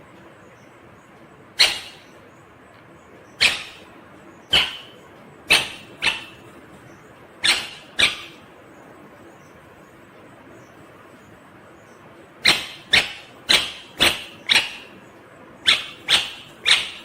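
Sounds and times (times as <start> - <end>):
parrot squawking shrilly: 1.6 - 2.1, 3.4 - 3.9, 4.5 - 6.4, 7.4 - 8.4, 12.4 - 15.0, 15.6 - 17.0.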